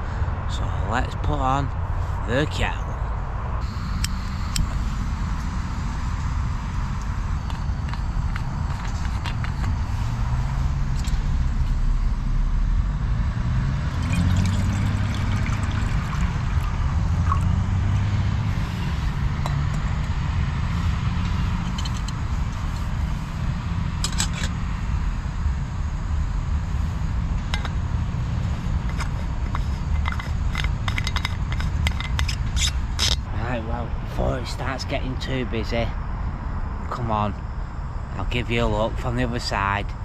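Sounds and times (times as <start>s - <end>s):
steady traffic rumble: 0.0s - 40.0s
vehicle engines passing: 0.0s - 40.0s
engine pulling away: 3.6s - 31.8s.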